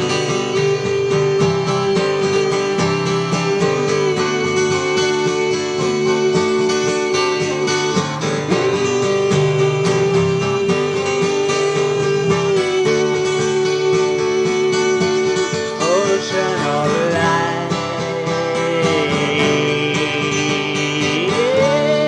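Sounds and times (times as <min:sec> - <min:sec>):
long held note: 0:00.0 - 0:16.5
guitar strumming: 0:00.0 - 0:22.0.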